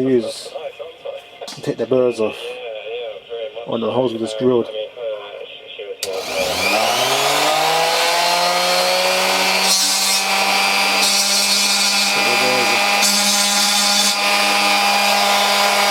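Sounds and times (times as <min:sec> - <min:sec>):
bit grinding sheet metal: 0:06.0 - 0:15.9
rotary tool running: 0:06.0 - 0:15.9.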